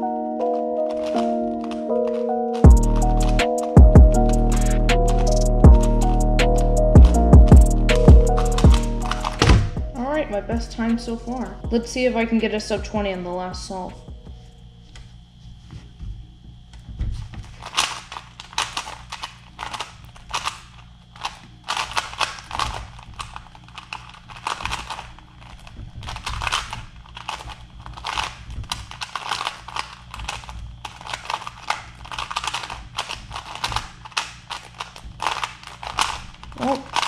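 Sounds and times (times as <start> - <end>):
plastic cube clacking: 0.5 - 3.8, 7.9 - 9.6, 17.4 - 37.0.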